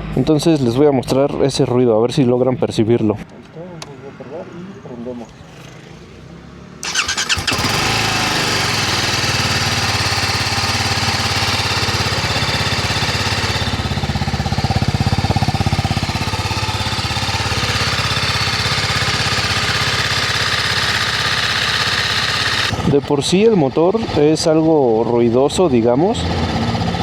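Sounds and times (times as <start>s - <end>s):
engine clatter: 6.8s - 27.0s
motorcycle engine running: 6.8s - 27.0s.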